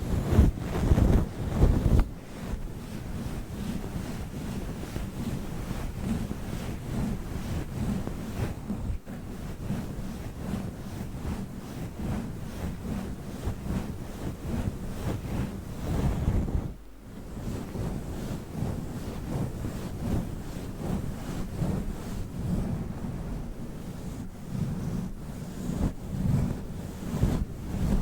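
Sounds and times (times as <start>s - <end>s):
microphone cover rubbing: 0.0s - 3.4s.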